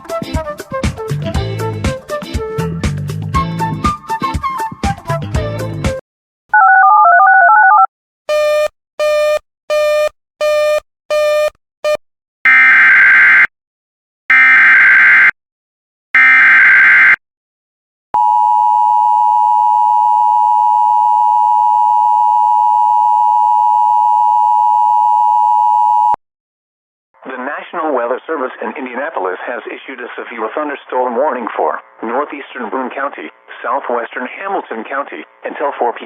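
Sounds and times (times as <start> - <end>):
short beeps: 18.2 - 26.2.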